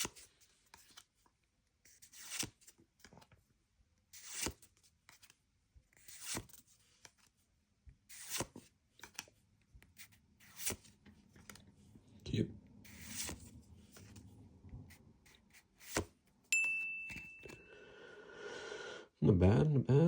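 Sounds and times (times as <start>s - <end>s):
light paper rustling: 12.9s - 16.4s
papery swish of trading cards: 14.9s - 16.2s.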